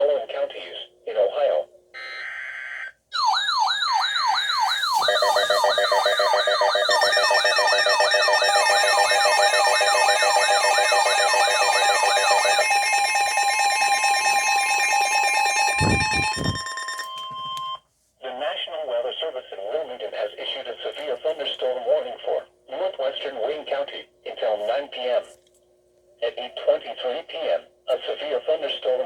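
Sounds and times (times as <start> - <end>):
siren tone sweeping down: 2.0 - 7.6, 11.4 - 16.7
steady high beeping tones: 3.2 - 17.8.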